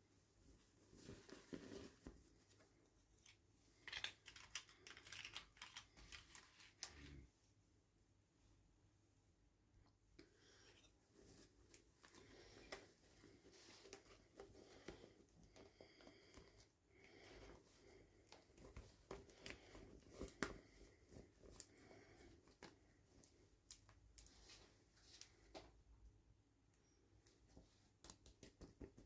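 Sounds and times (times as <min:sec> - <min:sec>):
packaging clicks and rustles: 0:03.2 - 0:07.1.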